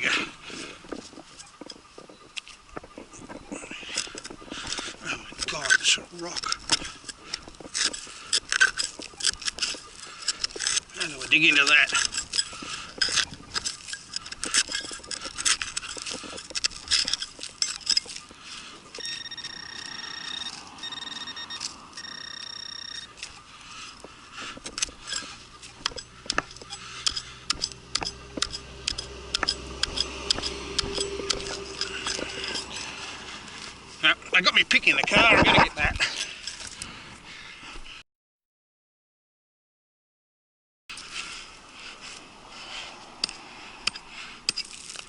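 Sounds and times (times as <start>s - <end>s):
hand digger scraping rocky ground: 0.0s - 36.9s, 40.9s - 45.0s
metal detector high tone: 18.9s - 23.5s, 25.0s - 33.3s.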